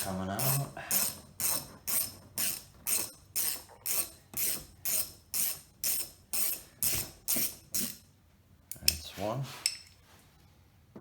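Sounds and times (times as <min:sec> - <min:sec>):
ratchet wrench clicking: 0:00.0 - 0:08.0.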